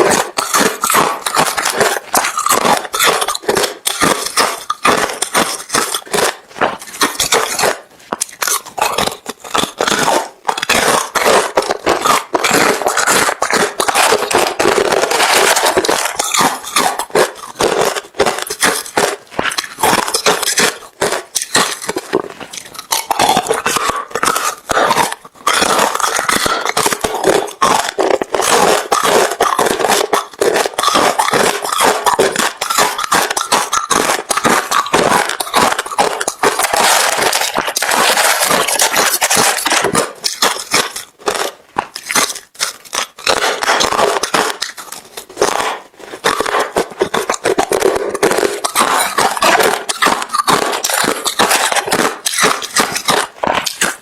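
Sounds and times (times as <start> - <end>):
chewing crunchy ice: 0.0 - 54.0.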